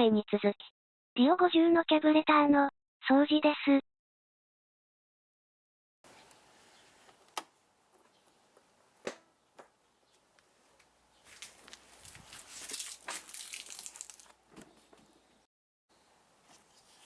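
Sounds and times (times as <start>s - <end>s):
sharp clicks or knocks: 9.0s - 9.7s
rustling and scraping: 10.1s - 15.3s.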